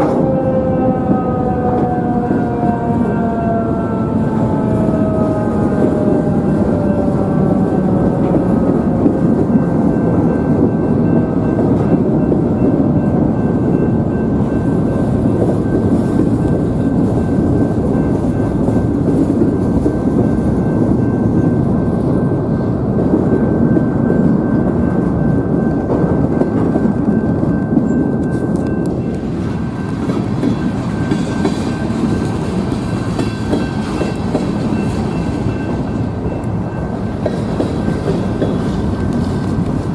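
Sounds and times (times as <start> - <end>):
siren winding down: 0.0 - 9.3
train rumbling past: 0.0 - 39.9.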